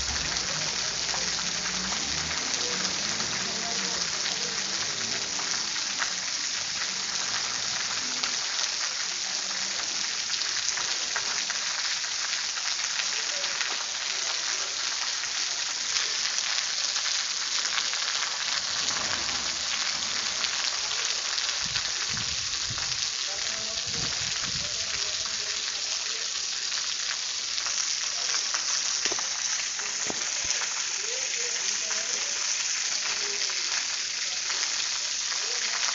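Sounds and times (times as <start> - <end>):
rain falling: 0.0 - 35.9.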